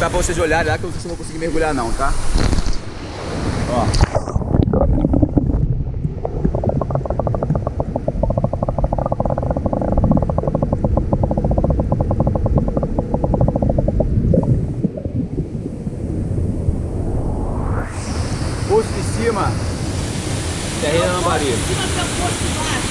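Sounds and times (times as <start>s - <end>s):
muffled underwater stream rush: 0.0s - 22.9s
rapid pulsing rattle: 6.6s - 14.6s.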